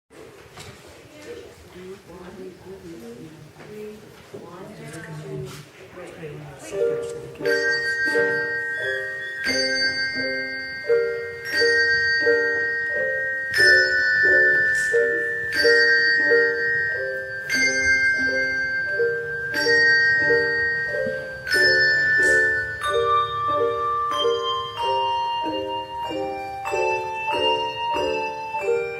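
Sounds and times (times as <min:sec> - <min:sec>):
handbell choir playing: 0:06.8 - 0:28.9.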